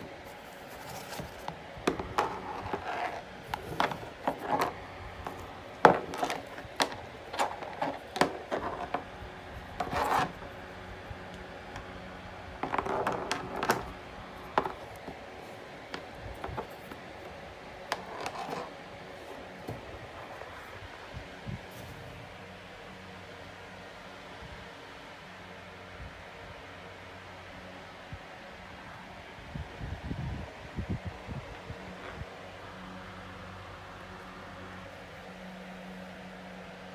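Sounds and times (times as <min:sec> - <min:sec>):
rubbing and scraping of packaging: 0:00.0 - 0:22.3.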